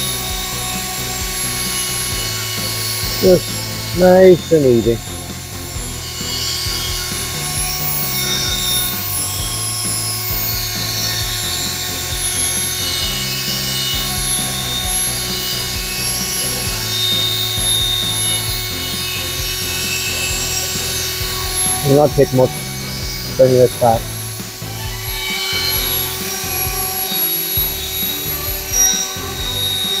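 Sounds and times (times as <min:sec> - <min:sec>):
electric drill motor whine: 0:00.0 - 0:30.0.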